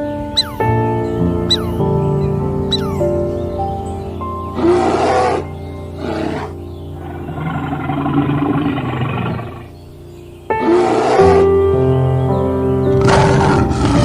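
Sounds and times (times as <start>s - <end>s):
background music: 0.0s - 14.0s
big cat roaring: 4.6s - 9.7s, 10.5s - 11.5s, 12.9s - 14.0s
low growl: 4.6s - 9.8s, 12.9s - 14.0s.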